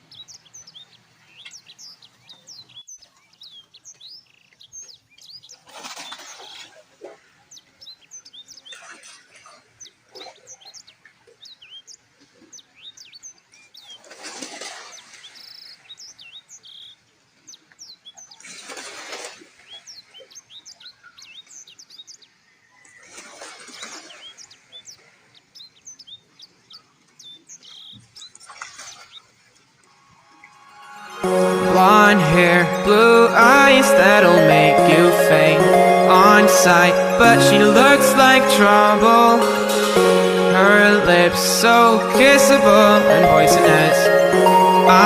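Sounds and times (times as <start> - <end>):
small birds chirping: 0.0 - 6.5.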